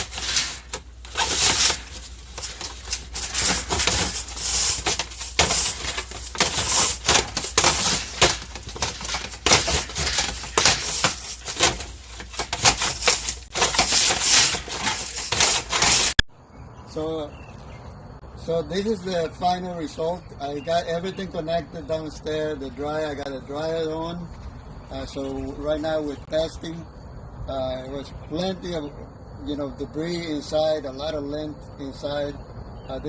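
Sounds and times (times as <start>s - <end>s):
scraping and rustling lint: 0.0s - 16.2s.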